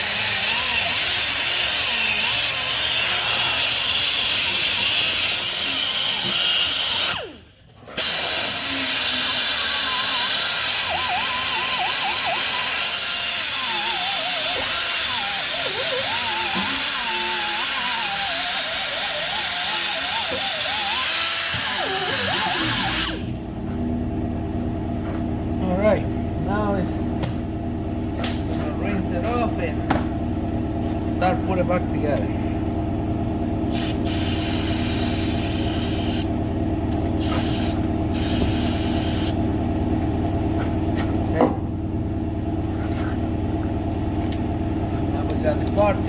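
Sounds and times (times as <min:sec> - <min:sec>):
power tool whining on metal: 0:00.0 - 0:23.4, 0:33.7 - 0:39.5
low rhythmic hum: 0:21.8 - 0:46.0.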